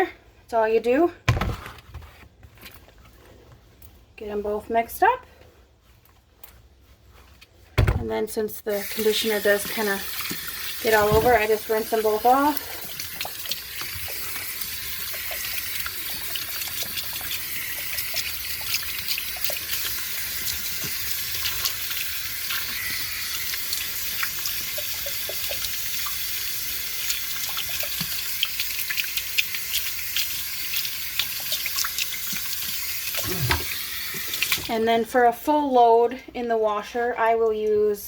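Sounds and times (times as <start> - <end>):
tap water running into sink: 8.8 - 34.7
bottles splashing and clicking: 9.4 - 34.7.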